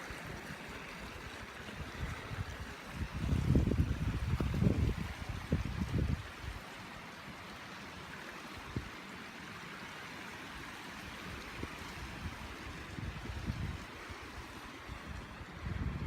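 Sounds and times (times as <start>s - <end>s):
flowing water: 0.0s - 16.0s
wind buffeting microphone: 1.0s - 6.6s, 11.4s - 16.0s.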